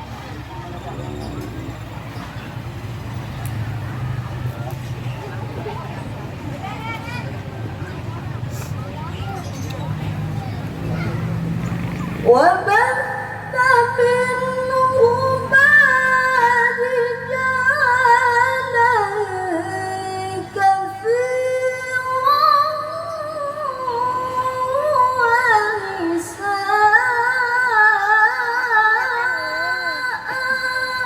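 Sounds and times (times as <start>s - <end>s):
woman reciting melodically: 12.2s - 31.0s.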